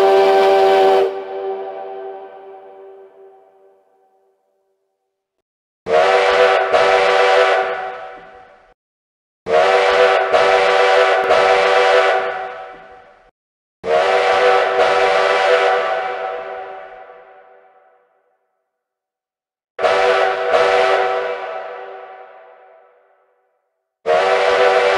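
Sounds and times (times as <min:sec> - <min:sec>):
train whistle blasts: 0:00.0 - 0:03.7, 0:05.9 - 0:08.4, 0:09.5 - 0:13.0, 0:13.8 - 0:17.4, 0:19.8 - 0:22.7, 0:24.0 - 0:24.9.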